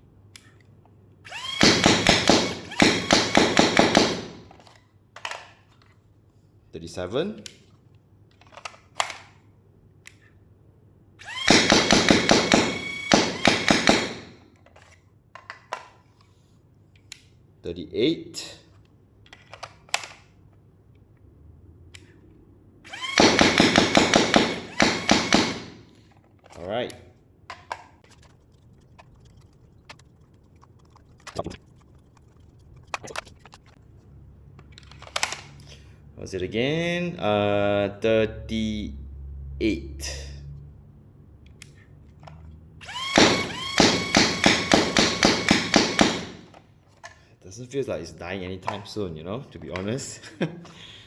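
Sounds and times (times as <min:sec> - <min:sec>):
plastic clicks of toy blaster: 0:00.3 - 0:00.7, 0:04.0 - 0:05.9, 0:08.3 - 0:09.4, 0:10.0 - 0:10.4, 0:18.8 - 0:20.4, 0:21.9 - 0:22.2, 0:34.7 - 0:35.6
foam darts firing rapidly: 0:01.6 - 0:04.5
motor whine spinning up: 0:12.6 - 0:13.7, 0:42.8 - 0:46.4.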